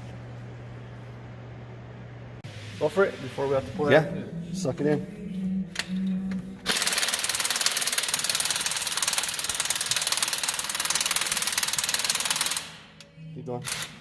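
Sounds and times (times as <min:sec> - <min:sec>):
impact wrench hammering: 0:06.7 - 0:12.9.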